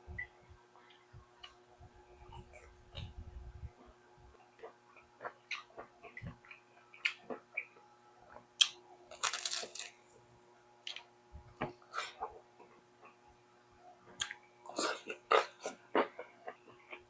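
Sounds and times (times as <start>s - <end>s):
person chewing food: 3.8s - 9.9s, 14.1s - 17.0s
food crunching: 8.6s - 10.0s.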